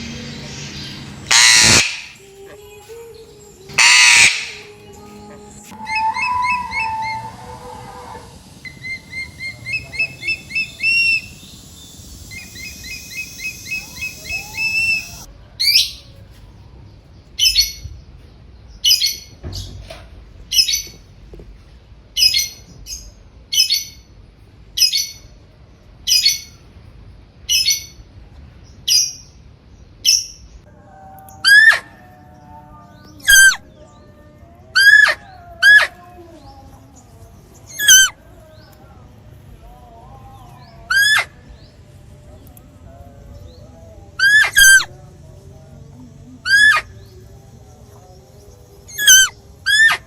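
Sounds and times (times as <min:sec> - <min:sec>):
bird chirping and calling: 0:00.0 - 0:16.1, 0:31.3 - 0:38.8, 0:43.4 - 0:45.0, 0:46.2 - 0:50.0.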